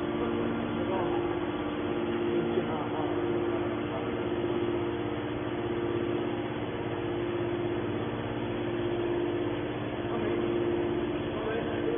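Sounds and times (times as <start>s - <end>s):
baler motor and pump humming: 0.0s - 11.9s.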